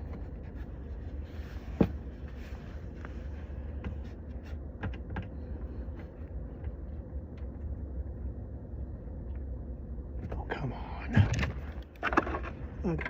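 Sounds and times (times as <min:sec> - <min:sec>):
steady low rumble: 0:00.0 - 0:13.0.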